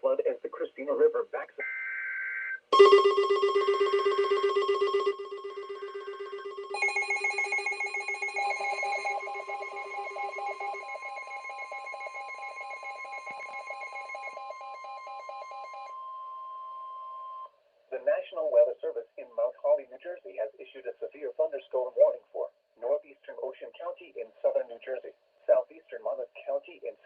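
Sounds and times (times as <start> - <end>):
pulsing electronic beeps: 2.6 - 15.9
steady alert tone: 2.7 - 10.2.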